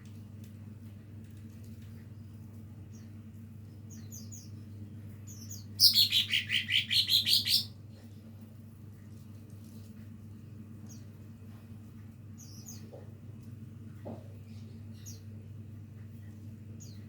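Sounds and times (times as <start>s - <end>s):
bird trill: 5.6s - 7.7s.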